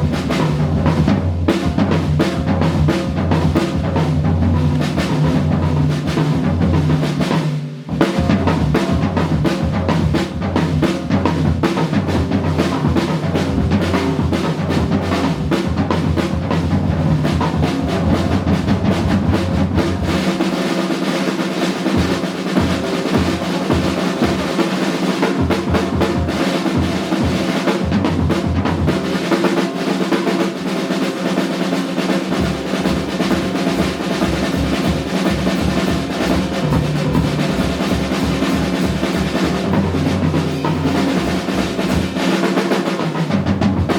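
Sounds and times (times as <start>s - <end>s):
snare and cymbal drumming: 0.0s - 43.9s
jazz combo playing: 7.9s - 20.6s, 32.4s - 42.5s.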